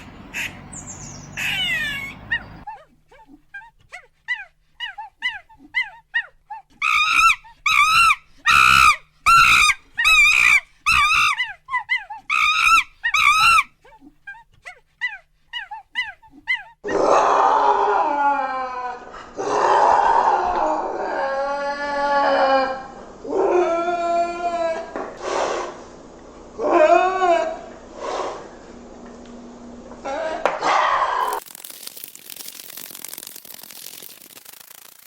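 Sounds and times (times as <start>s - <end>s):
animal howling cries: 1.4s - 2.8s, 4.3s - 13.8s, 15.0s - 25.0s, 26.6s - 27.7s.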